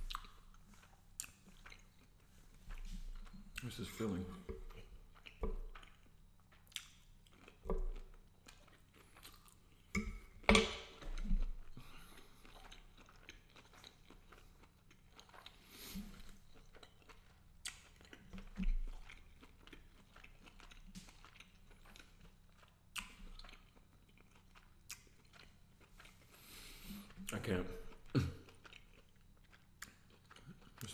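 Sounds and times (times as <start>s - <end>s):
wet mouth clicks and smacks: 0.0s - 1.8s, 4.7s - 7.1s, 17.6s - 19.2s, 22.9s - 23.6s
close-miked chewing: 0.0s - 30.9s.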